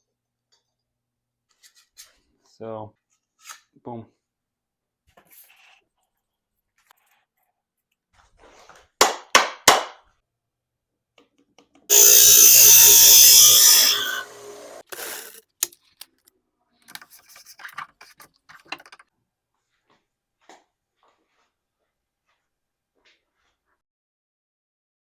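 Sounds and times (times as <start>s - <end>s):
short loud tool bursts: 11.9s - 15.4s.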